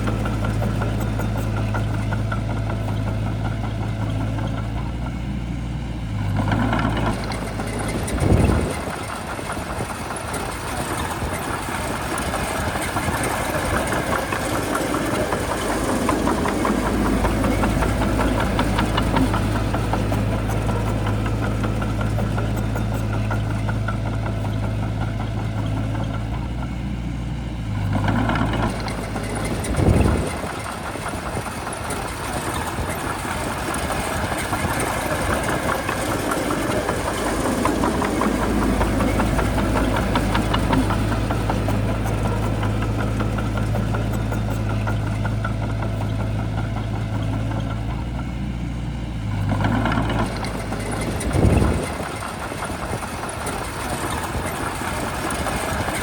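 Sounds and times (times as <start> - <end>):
bulldozer diesel engine droning: 0.0 - 56.0.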